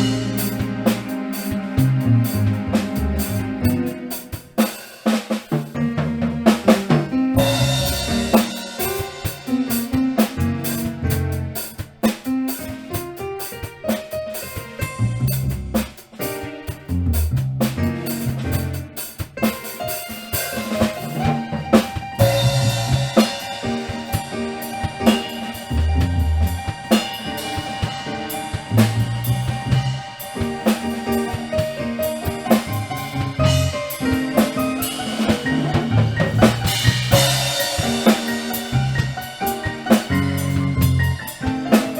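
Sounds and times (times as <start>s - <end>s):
low bass notes: 0.0s - 4.0s, 6.0s - 8.6s, 10.4s - 11.6s, 14.8s - 16.0s, 16.8s - 19.0s, 22.2s - 24.0s, 25.0s - 27.1s, 28.5s - 41.6s
drum kit beat: 0.0s - 41.9s.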